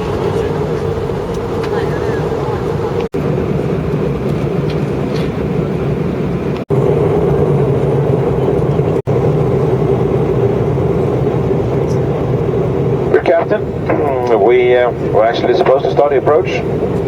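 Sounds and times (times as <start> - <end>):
airliner engines droning: 0.0 - 17.0
constant cabin hum: 0.0 - 17.0.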